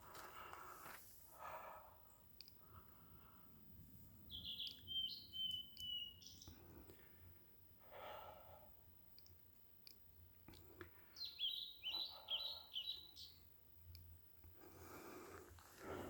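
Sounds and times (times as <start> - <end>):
small songbird chirping: 4.0 - 7.1, 11.0 - 14.1.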